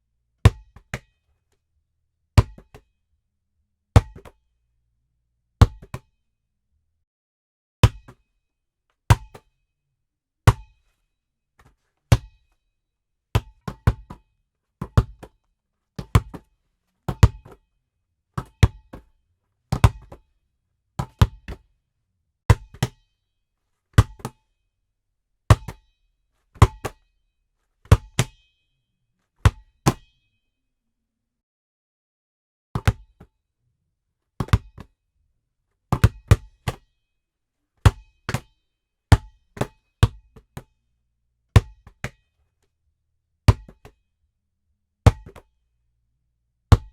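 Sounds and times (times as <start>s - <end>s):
basketball bouncing on hard floor: 2.4s - 2.8s, 4.0s - 4.3s, 5.6s - 6.0s, 13.4s - 14.2s, 14.8s - 15.3s, 16.0s - 16.5s, 17.1s - 17.6s, 18.4s - 19.1s, 19.7s - 20.2s, 21.0s - 21.6s, 32.8s - 33.3s, 34.4s - 34.9s, 35.9s - 36.8s, 39.1s - 40.7s, 43.5s - 44.0s, 45.1s - 45.4s.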